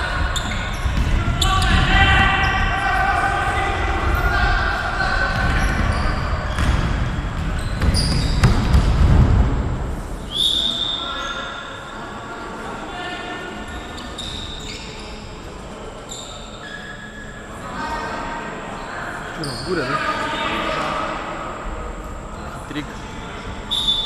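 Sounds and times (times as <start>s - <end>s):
players' voices: 0.0s - 8.2s, 10.4s - 23.7s
sneakers squeaking on court: 0.3s - 1.8s, 5.3s - 9.0s, 13.7s - 15.4s.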